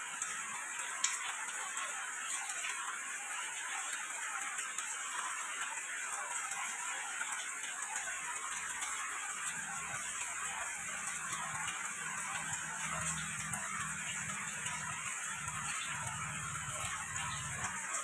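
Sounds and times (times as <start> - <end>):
rain pattering: 0.0 - 18.0.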